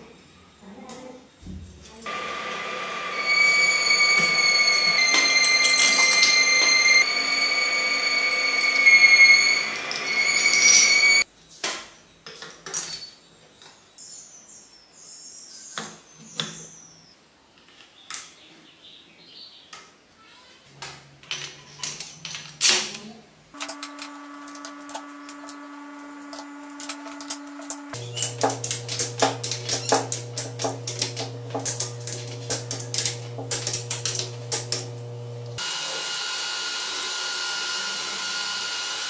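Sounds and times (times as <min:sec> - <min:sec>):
steady machine whine: 0:02.1 - 0:11.2, 0:23.6 - 0:39.0
metal parts clicking and knocking: 0:23.6 - 0:35.0.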